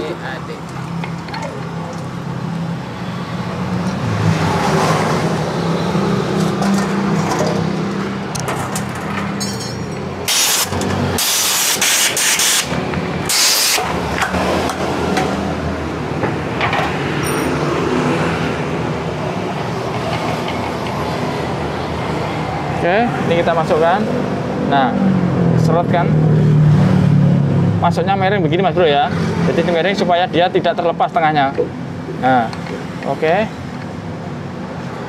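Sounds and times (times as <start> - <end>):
loud hiss bursts: 10.3 - 12.7, 13.3 - 13.9.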